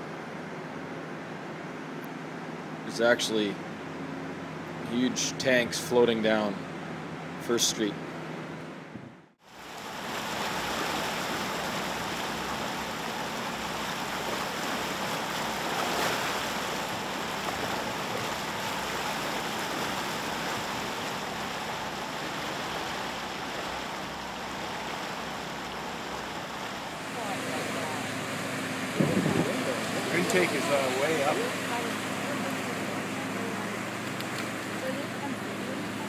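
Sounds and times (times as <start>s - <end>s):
floodwater rushing: 9.4s - 36.0s.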